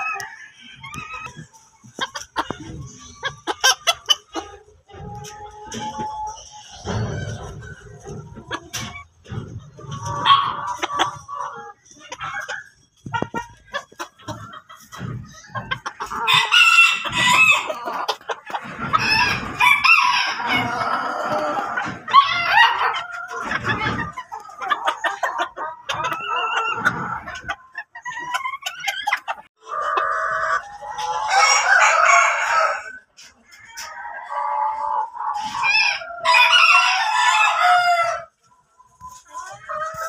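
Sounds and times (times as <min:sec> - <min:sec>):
chickens clucking: 0:00.0 - 0:40.0
roosters crowing: 0:15.0 - 0:27.6, 0:28.3 - 0:38.3.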